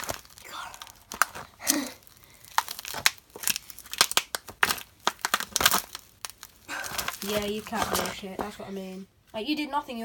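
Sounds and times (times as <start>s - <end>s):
tablet casing crackling and creaking: 0.0s - 8.6s.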